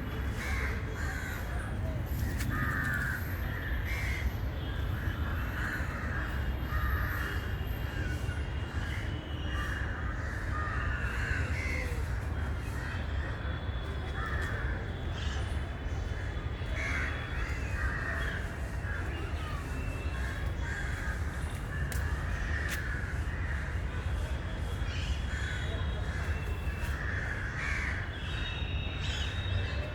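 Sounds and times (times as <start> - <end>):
birds cawing: 2.5 - 4.3, 24.9 - 25.7, 26.9 - 28.4.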